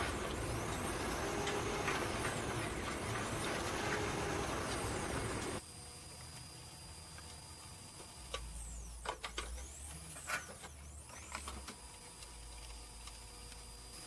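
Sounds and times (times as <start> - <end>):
faint hum: 0.0 - 5.6
stepper motors whining: 0.0 - 5.6.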